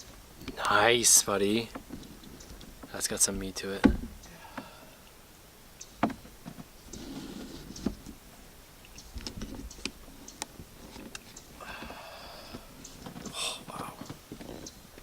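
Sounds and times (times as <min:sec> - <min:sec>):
fish and tackle knocking: 0:01.4 - 0:04.8, 0:06.0 - 0:06.6.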